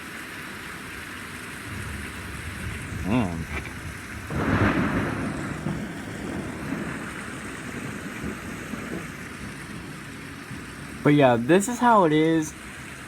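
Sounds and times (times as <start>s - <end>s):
heavy rain pouring: 0.0s - 13.0s
thunder rumbling: 1.6s - 11.6s.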